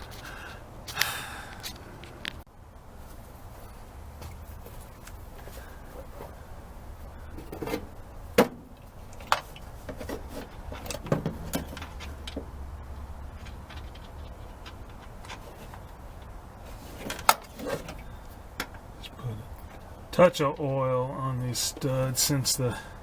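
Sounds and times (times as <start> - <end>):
low steady hum: 0.0 - 23.0
tools and metal parts clicking: 13.2 - 18.8.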